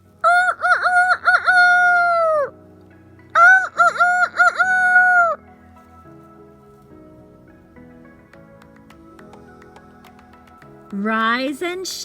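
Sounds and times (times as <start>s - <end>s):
rooster crowing: 0.2s - 2.5s, 3.4s - 5.4s.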